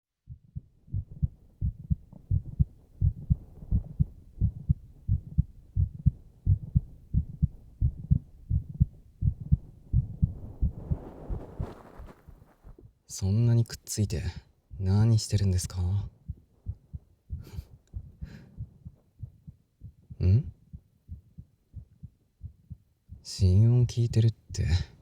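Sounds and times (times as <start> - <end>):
heartbeat double thump: 0.3 - 12.9, 16.0 - 23.3
soft rushing noise: 7.4 - 12.8.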